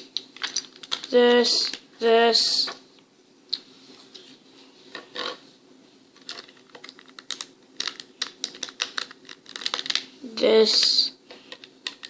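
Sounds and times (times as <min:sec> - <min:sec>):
plastic bricks clicking: 0:06.2 - 0:10.1, 0:11.5 - 0:12.0.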